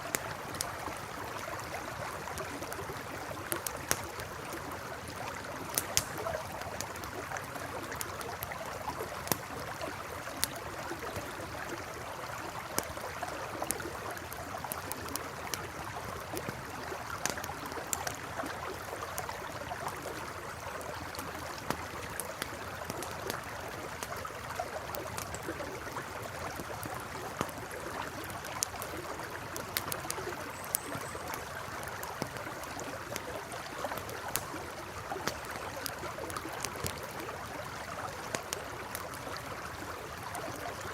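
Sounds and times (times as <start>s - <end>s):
campfire crackling: 0.0s - 40.9s
river water flowing: 0.0s - 40.9s.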